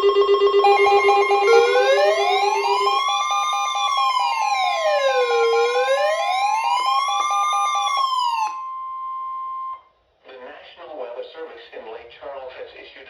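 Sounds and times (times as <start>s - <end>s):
steady high tone: 0.0s - 9.8s
wailing siren: 0.0s - 9.8s.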